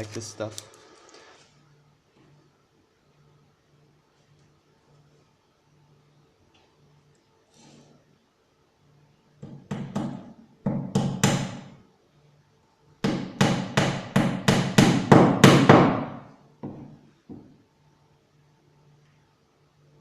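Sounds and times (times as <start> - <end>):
hammer striking nail: 9.4 - 11.8, 13.0 - 16.9.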